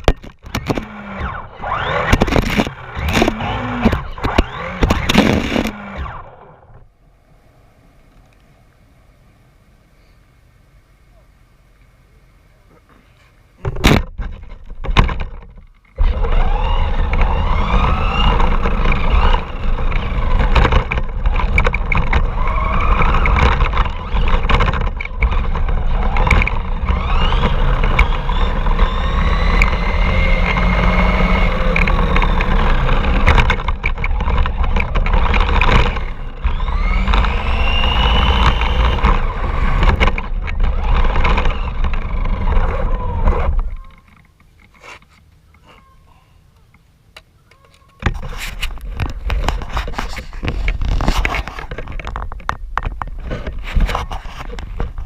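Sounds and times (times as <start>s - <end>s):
wheels and chassis clattering: 0.0s - 9.3s, 12.7s - 46.0s, 46.6s - 55.0s
steady rumble: 0.0s - 44.1s, 48.0s - 55.0s
toy car motor whining: 0.4s - 6.8s, 16.0s - 46.0s.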